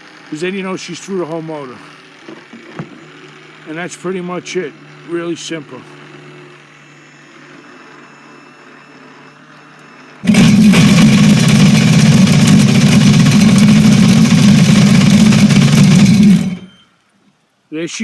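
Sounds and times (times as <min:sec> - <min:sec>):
jet ski engine running: 0:10.2 - 0:16.7.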